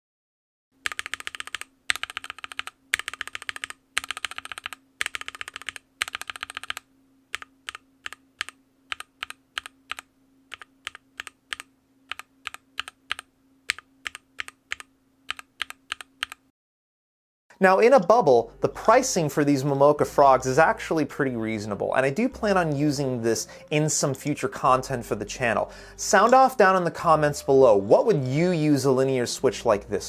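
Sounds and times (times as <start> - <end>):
mechanical keyboard typing: 0.8 - 16.4.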